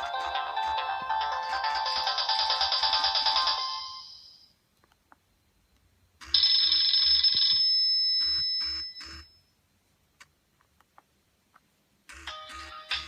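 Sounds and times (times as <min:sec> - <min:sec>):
mobile phone ringtone: 0:00.0 - 0:04.5, 0:06.2 - 0:09.4, 0:12.1 - 0:13.0.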